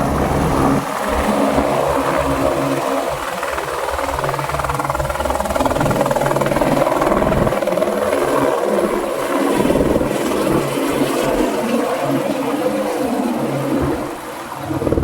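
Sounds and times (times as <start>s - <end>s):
helicopter rotor chopping: 13.2s - 15.0s.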